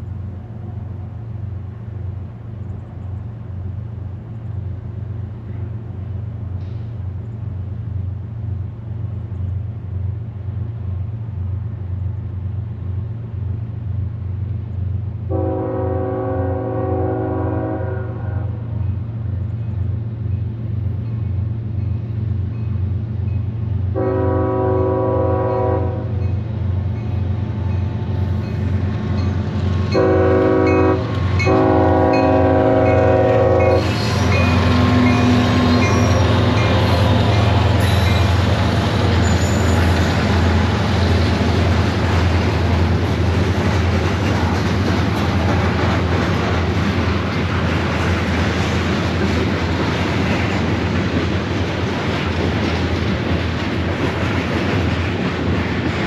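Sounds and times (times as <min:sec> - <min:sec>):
locomotive engine drone: 0:00.0 - 0:56.0
train rumbling and clattering past: 0:00.0 - 0:56.0
locomotive air horn: 0:15.3 - 0:18.6, 0:24.0 - 0:26.2, 0:29.9 - 0:38.4.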